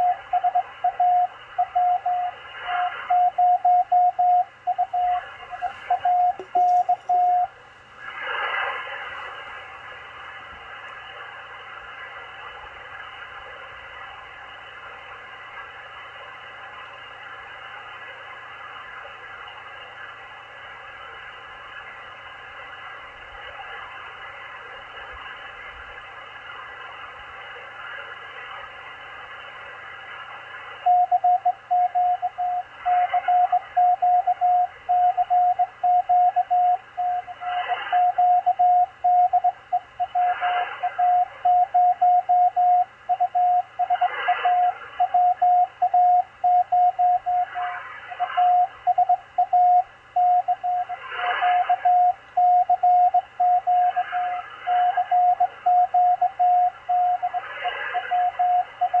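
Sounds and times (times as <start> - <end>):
morse code tone: 0.0 - 7.6, 30.8 - 59.0
radio band hiss: 0.0 - 59.0
static bursts: 0.0 - 59.0.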